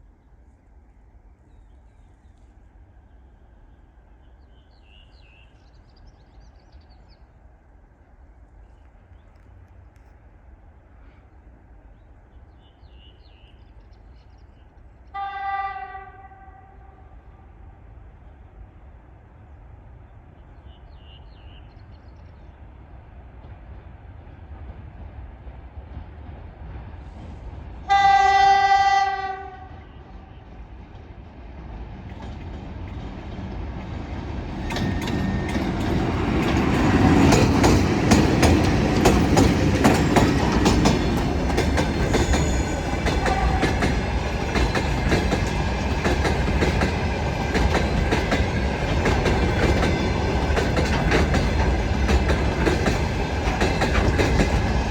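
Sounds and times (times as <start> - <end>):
train rumble: 0.0 - 54.9
train horn blast: 15.1 - 17.5, 27.9 - 30.2, 43.1 - 44.0
train wheels clacking over rail joints: 32.1 - 54.9.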